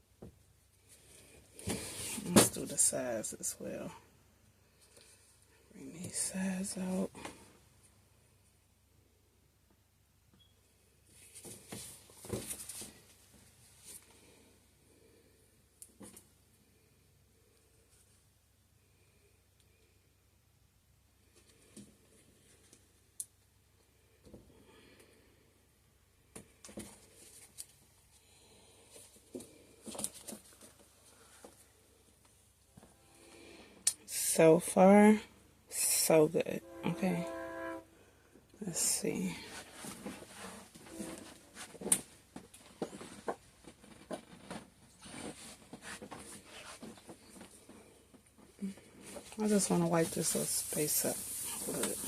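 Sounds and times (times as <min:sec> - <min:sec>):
soft rubbing: 0:36.1 - 0:37.9, 0:49.0 - 0:52.0.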